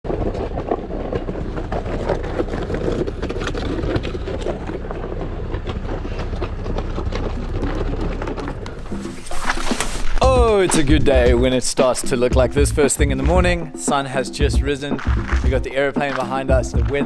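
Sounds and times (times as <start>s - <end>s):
vehicle engine rumble: 0.0s - 11.7s.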